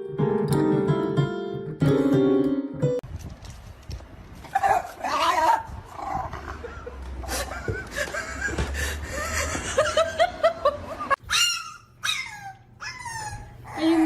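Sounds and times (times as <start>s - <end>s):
dog whining: 11.2s - 14.0s.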